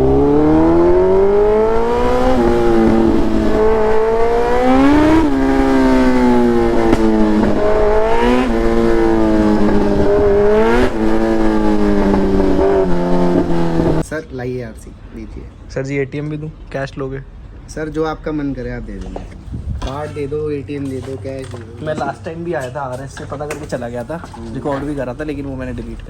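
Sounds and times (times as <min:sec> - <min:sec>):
motorcycle engine accelerating: 0:00.0 - 0:14.1.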